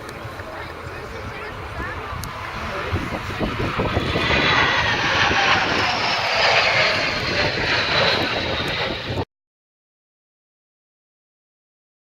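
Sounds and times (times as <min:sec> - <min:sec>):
jet aircraft flying past: 0:00.0 - 0:09.3.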